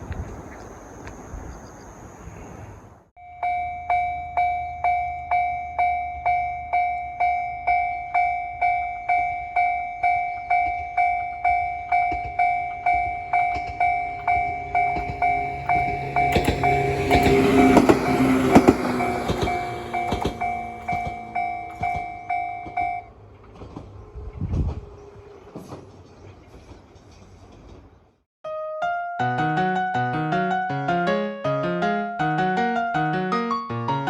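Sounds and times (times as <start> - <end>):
wind noise: 0.0 - 3.0, 23.6 - 26.8
approaching train running: 0.0 - 28.0
level crossing bell ringing: 3.2 - 23.1.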